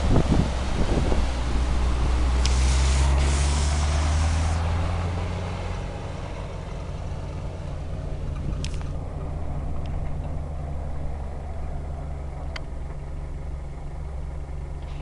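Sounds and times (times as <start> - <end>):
vehicle engine droning: 0.0 - 15.0
rush of hiss: 2.2 - 4.8.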